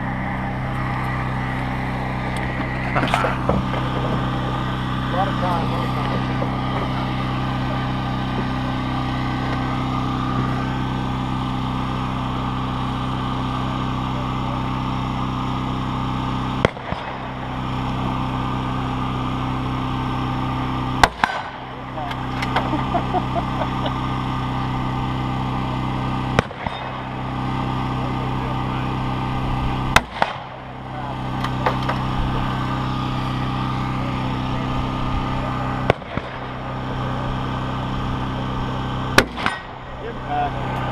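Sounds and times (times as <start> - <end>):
steady low hum: 0.0 - 40.9
rifle shots: 16.6 - 17.3, 21.0 - 21.6, 26.4 - 27.0, 29.9 - 30.6, 35.8 - 36.6, 39.2 - 39.8.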